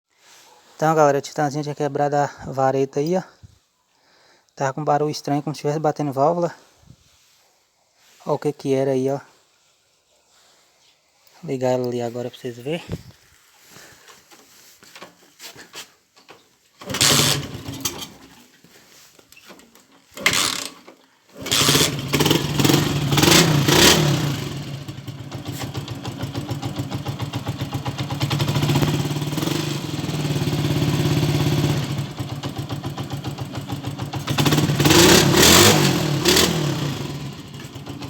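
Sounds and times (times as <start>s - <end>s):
motorcycle engine starting and revving: 16.8s - 18.4s, 20.1s - 38.0s
motorcycle engine idling: 21.4s - 38.0s.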